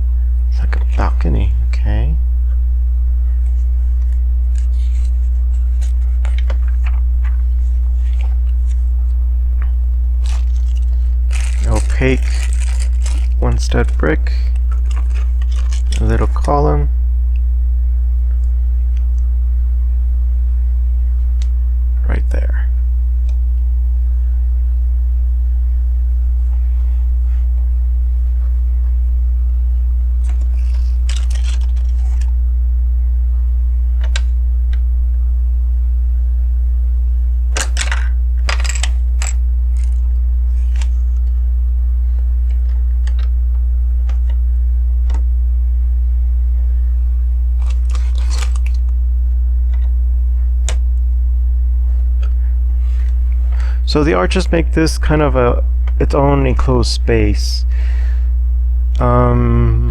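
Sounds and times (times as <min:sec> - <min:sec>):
low electrical hum: 0:00.0 - 0:59.9
plastic bricks clicking and rattling: 0:10.2 - 0:13.3.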